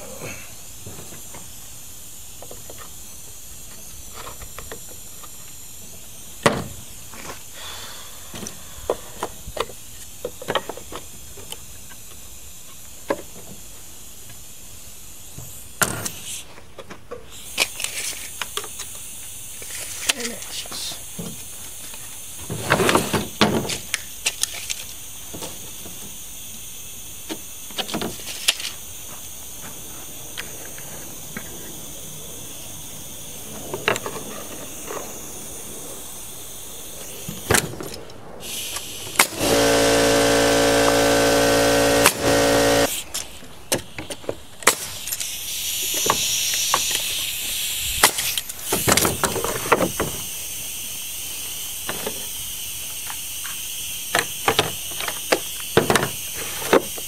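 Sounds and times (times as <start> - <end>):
electric power tool motor: 38.4 - 43.2, 44.8 - 57.0.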